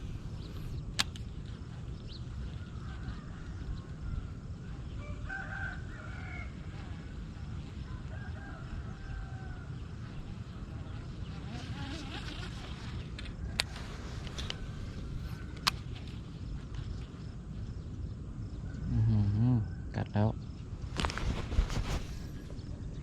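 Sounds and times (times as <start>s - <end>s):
steady low rumble: 0.0s - 5.2s, 5.8s - 23.0s
sharp click: 1.0s - 1.3s
rooster crowing: 5.0s - 6.9s, 8.1s - 9.8s.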